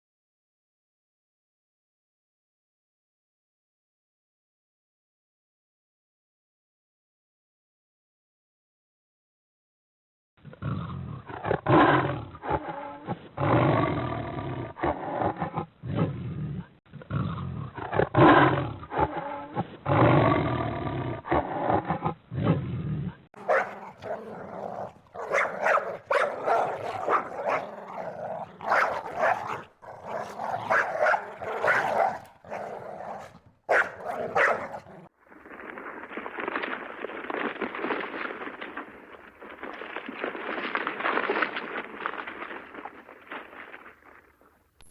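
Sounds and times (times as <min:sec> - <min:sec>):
animal calls and growls: 0:10.4 - 0:35.1.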